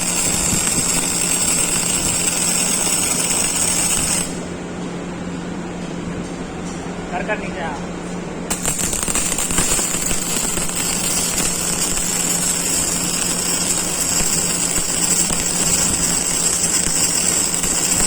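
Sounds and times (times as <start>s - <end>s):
welding arc crackling and sizzling: 0.0s - 4.6s, 8.5s - 18.0s.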